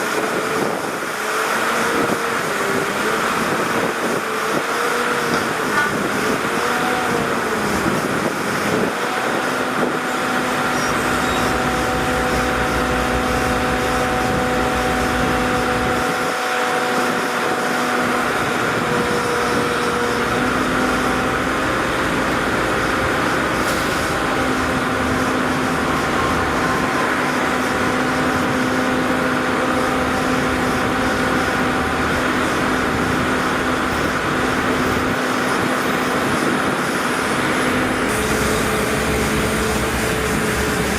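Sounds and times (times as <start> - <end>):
heavy machinery engine running: 0.0 - 40.9.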